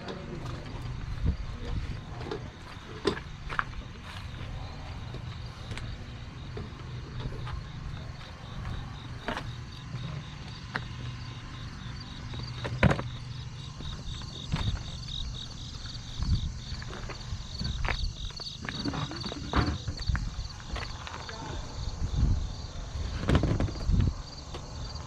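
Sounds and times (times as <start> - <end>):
steady low rumble: 0.0 - 19.2
insects chirping: 0.0 - 25.0.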